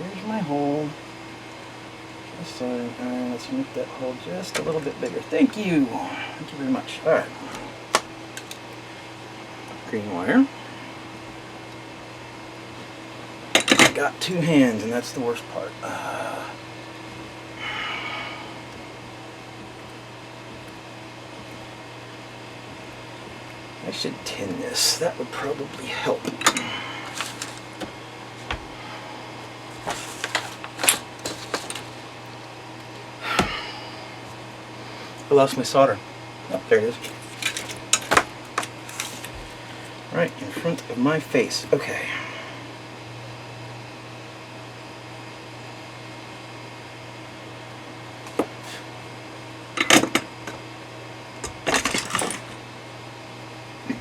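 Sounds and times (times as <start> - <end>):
steady low hum: 0.0 - 54.0
tools and parts clicking: 29.9 - 31.9, 37.0 - 39.3.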